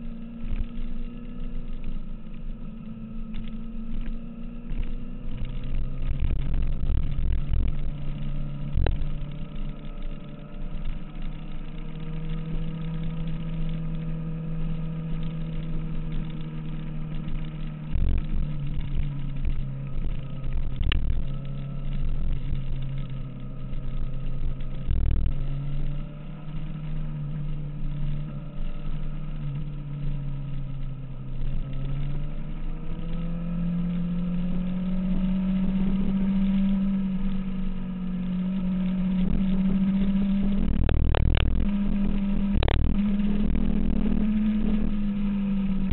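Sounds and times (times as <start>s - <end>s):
motorcycle engine accelerating: 0.0s - 45.9s
wind buffeting microphone: 39.2s - 45.0s.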